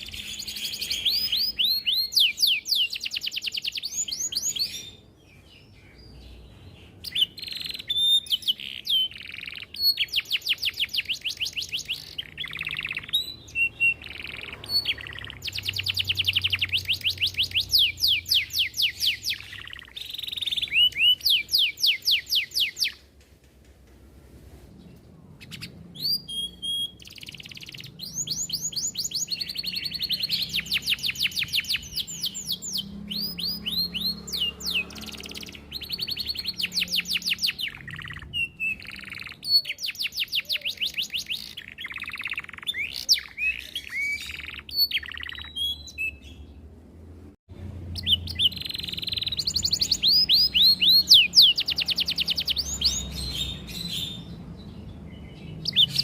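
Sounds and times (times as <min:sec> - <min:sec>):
canary singing trills: 0:00.0 - 0:23.1, 0:25.3 - 0:46.8, 0:47.6 - 0:56.0.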